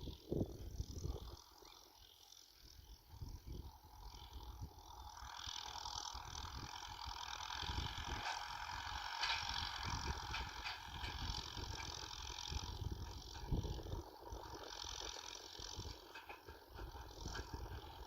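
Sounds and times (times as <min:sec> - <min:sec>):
tractor engine rumbling: 0:00.0 - 0:18.0
plough rattling and scraping: 0:04.9 - 0:18.0.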